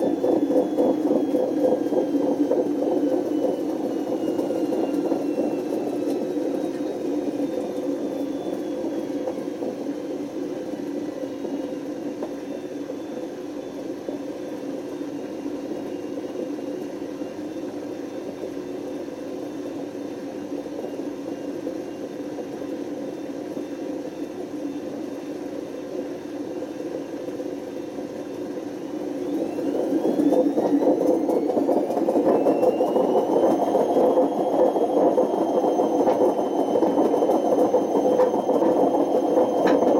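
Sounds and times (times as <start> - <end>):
washing machine whirring: 0.0 - 39.9
motor whine: 28.7 - 39.9.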